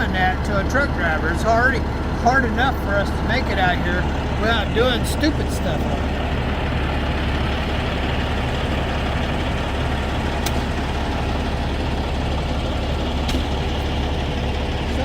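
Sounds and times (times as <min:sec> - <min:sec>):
truck diesel engine droning: 0:00.0 - 0:15.0.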